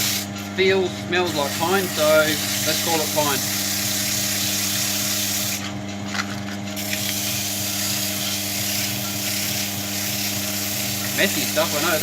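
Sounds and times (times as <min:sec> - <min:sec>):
running motor hum: 0:00.0 - 0:12.0
sandpaper rubbing on wood: 0:07.4 - 0:12.0.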